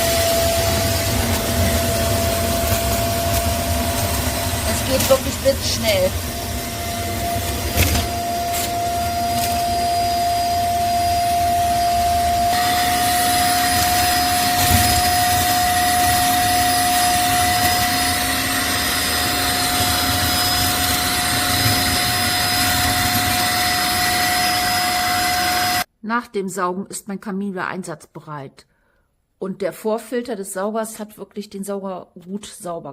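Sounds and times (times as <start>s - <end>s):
vacuum motor whining: 0.0s - 25.9s.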